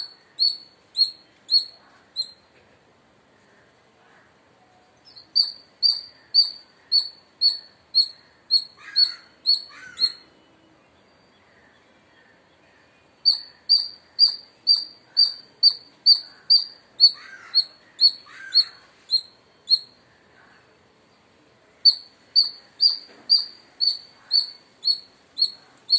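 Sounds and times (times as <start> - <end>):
squirrel chirping: 0.0 - 2.5, 5.0 - 10.3, 13.2 - 20.0, 21.8 - 25.9.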